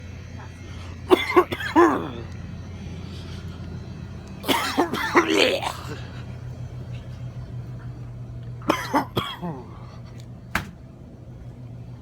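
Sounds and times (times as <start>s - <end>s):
steady low hum: 0.0s - 12.0s
person coughing: 1.1s - 2.2s, 4.4s - 6.1s, 8.6s - 9.9s.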